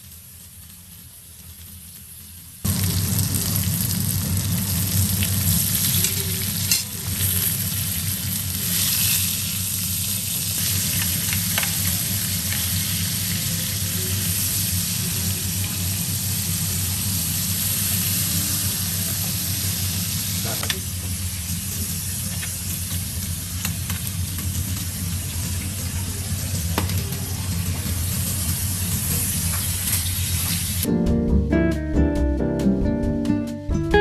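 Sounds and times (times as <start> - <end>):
food sizzling in oil: 0.0 - 30.9.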